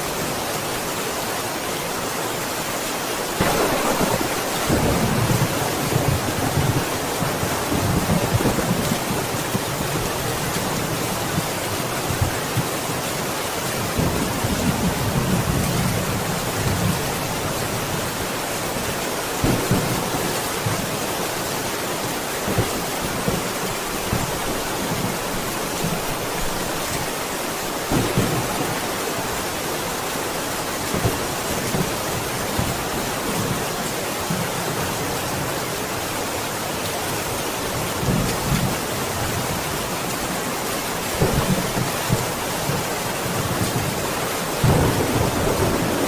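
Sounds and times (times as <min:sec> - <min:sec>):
heavy rain: 0:00.0 - 0:46.0
rain spatters: 0:00.0 - 0:46.0
low rolling thunder: 0:03.4 - 0:10.0, 0:27.9 - 0:29.0, 0:44.6 - 0:46.0.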